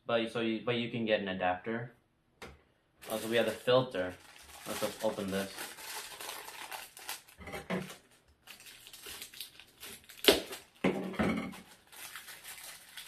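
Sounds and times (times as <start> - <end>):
packaging crinkling: 3.0 - 10.9, 11.5 - 13.0.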